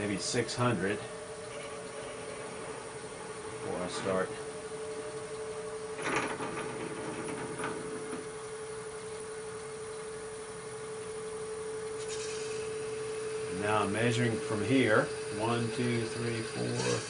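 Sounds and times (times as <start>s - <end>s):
wood lathe motor whining: 0.0s - 10.9s, 11.9s - 17.0s
drill bit cutting wood: 12.0s - 17.0s.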